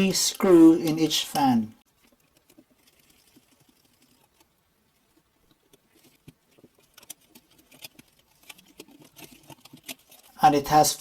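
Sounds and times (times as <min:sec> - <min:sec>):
small parts being handled: 0:00.0 - 0:10.4
screwdriver clicks and scratches: 0:05.7 - 0:10.4.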